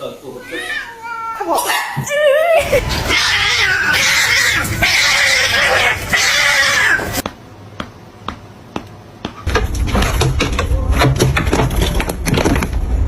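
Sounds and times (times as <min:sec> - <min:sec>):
cats fighting cries: 0:00.4 - 0:02.0, 0:02.6 - 0:07.2.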